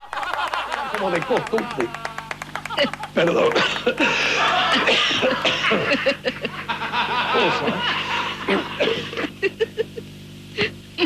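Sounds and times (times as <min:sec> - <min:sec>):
person laughing: 0:00.2 - 0:10.0
person coughing: 0:04.8 - 0:06.0, 0:08.5 - 0:09.4.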